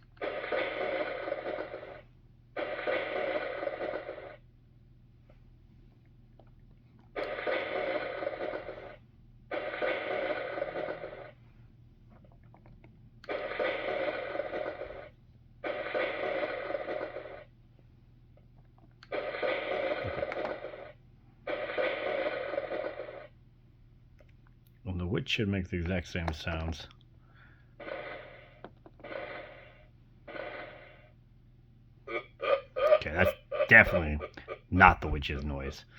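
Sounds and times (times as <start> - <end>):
toy electronic sound effects: 32.1 - 35.7.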